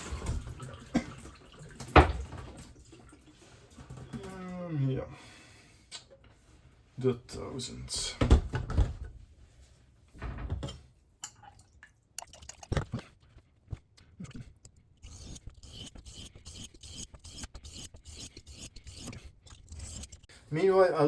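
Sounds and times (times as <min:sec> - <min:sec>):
knife scraping on sharpening stone: 0:15.0 - 0:20.3.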